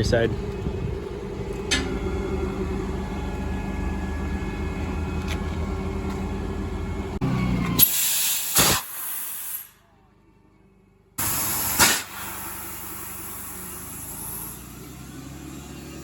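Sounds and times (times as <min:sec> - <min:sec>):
engine running: 0:00.0 - 0:16.0
compressed air hiss: 0:07.8 - 0:09.8, 0:11.2 - 0:14.7.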